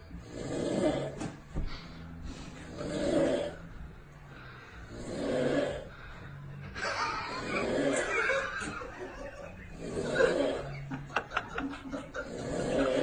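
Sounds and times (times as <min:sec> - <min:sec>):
snoring: 0:00.0 - 0:13.0
chuckling laughter: 0:06.7 - 0:13.0.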